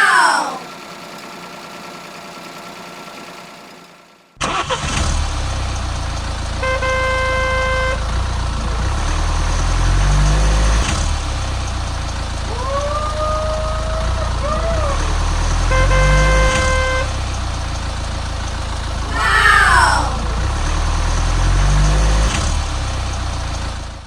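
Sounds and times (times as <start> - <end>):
vehicle engine rumbling: 4.4 - 24.0
horn honking: 6.5 - 9.2, 14.0 - 17.6, 19.0 - 20.5.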